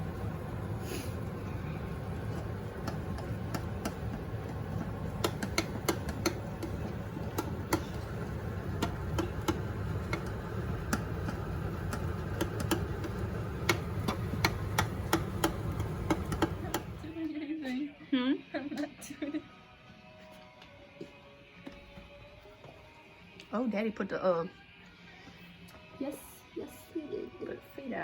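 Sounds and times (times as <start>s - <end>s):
low hum: 0.0s - 17.2s
metal utensil tapping a pot: 2.3s - 17.1s.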